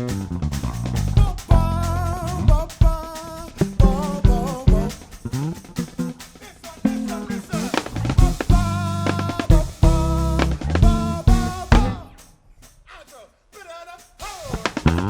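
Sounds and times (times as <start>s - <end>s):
bass guitar notes: 0.0s - 2.7s, 3.6s - 6.1s, 6.9s - 12.1s
live band playing: 1.1s - 12.0s
kick and snare drum hits: 1.2s - 1.8s, 2.5s - 5.1s, 6.9s - 12.1s, 14.2s - 15.0s.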